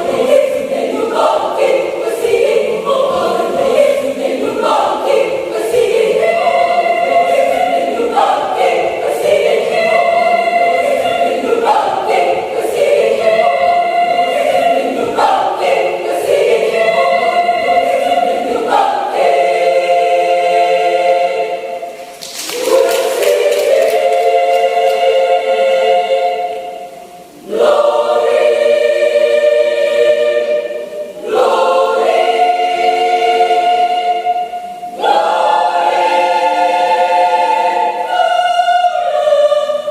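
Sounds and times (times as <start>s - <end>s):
church choir singing chords: 0.0s - 39.9s.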